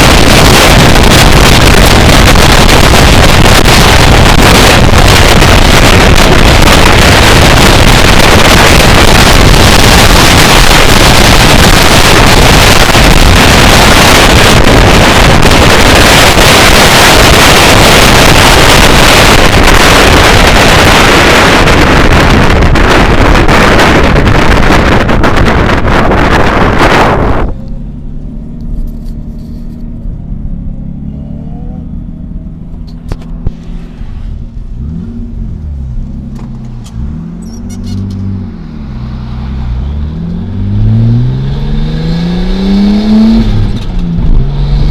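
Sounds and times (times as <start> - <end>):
wind buffeting microphone: 0.0 - 27.6
car engine and road hum: 0.0 - 44.9.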